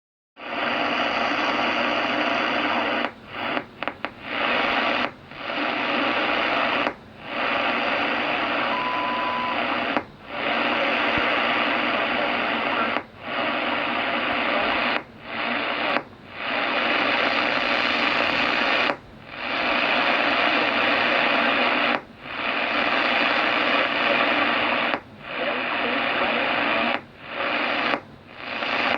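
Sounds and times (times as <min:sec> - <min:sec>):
interference pops: 0:00.4 - 0:28.9
radio receiver hiss: 0:00.4 - 0:28.9
brief steady tone: 0:08.6 - 0:09.7.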